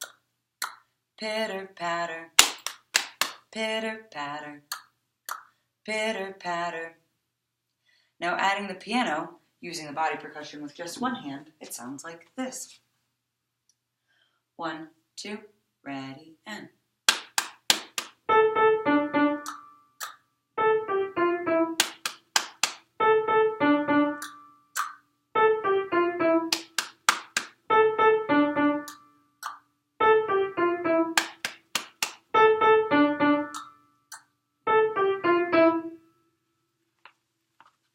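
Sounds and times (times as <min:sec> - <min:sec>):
piano phrase: 0:18.3 - 0:19.6, 0:20.6 - 0:21.8, 0:23.0 - 0:24.5, 0:25.4 - 0:26.6, 0:27.7 - 0:29.0, 0:30.0 - 0:31.3, 0:32.4 - 0:33.6, 0:34.7 - 0:36.0.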